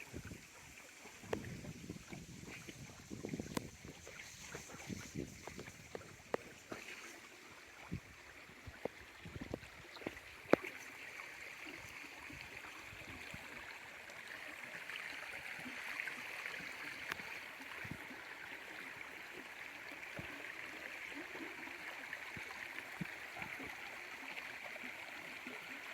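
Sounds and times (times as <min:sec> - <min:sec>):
small waterfall splashing: 0:00.0 - 0:25.9.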